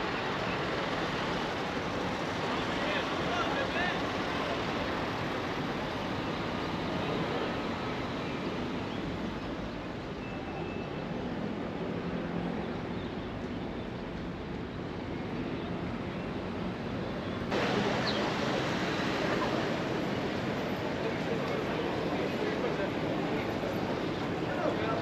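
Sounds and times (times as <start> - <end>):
rushing water: 0.0 - 9.4, 17.5 - 25.0.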